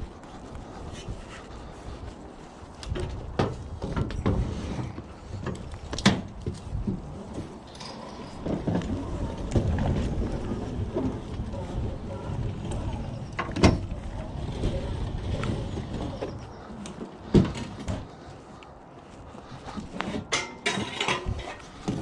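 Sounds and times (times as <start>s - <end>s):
wind rumble on microphone: 0.0s - 18.3s, 19.0s - 22.0s
scrap metal clanking: 19.9s - 22.0s.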